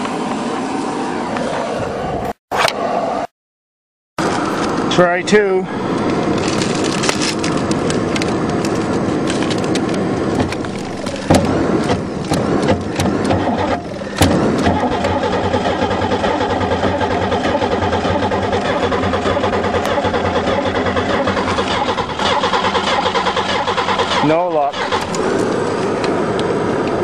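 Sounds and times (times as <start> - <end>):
car starter cranking engine: 8.8 - 26.3.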